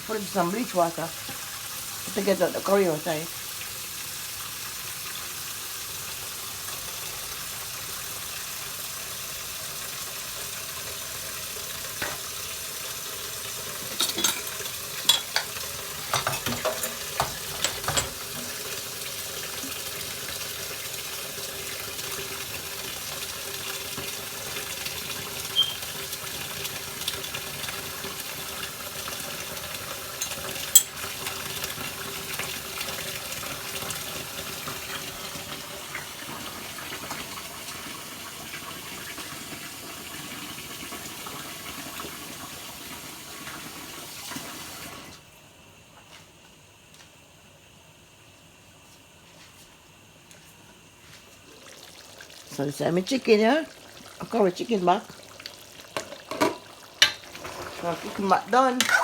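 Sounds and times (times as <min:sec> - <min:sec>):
dishes and utensils clinking: 0:13.8 - 0:18.6, 0:30.2 - 0:31.0.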